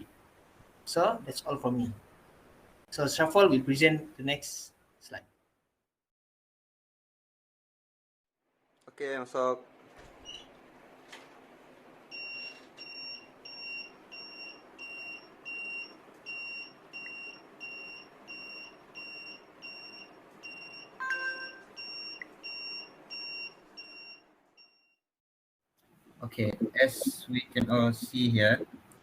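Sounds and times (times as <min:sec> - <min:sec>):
high-pitched alarm beeps: 0:12.2 - 0:24.9
brief lower tone: 0:21.0 - 0:21.7.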